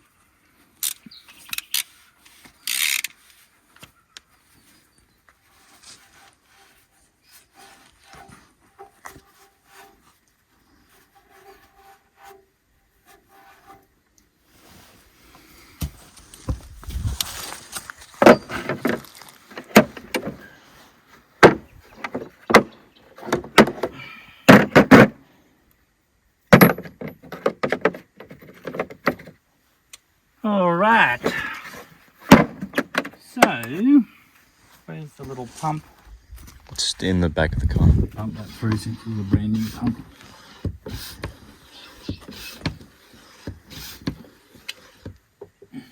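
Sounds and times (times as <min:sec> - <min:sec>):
faint squeaks and ticks: 0:00.8 - 0:14.4, 0:38.2 - 0:44.0
loud knocks and clunks: 0:19.6 - 0:20.4, 0:21.4 - 0:25.2, 0:32.2 - 0:33.6.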